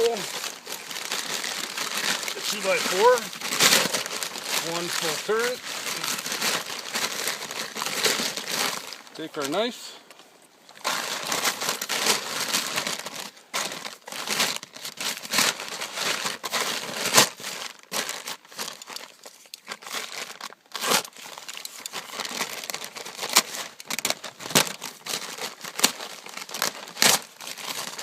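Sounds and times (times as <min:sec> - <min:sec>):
plastic tarp crinkling: 0:00.0 - 0:28.0.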